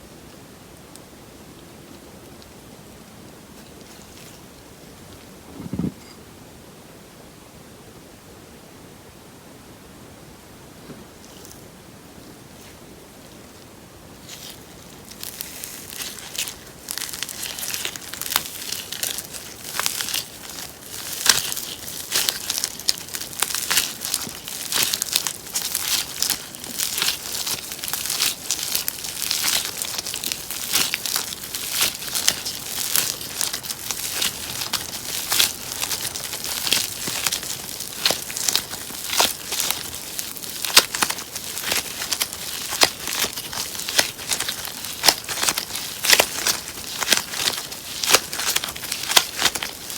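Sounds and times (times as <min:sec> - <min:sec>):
slime crackling and popping: 0:14.2 - 0:49.9.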